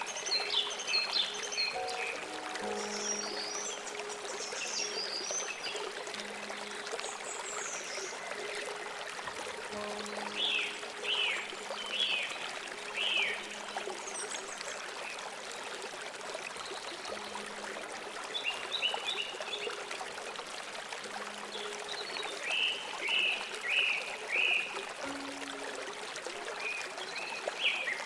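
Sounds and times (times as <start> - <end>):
songbird calling: 0.0 - 8.7, 9.8 - 12.4
stream running: 0.0 - 28.0.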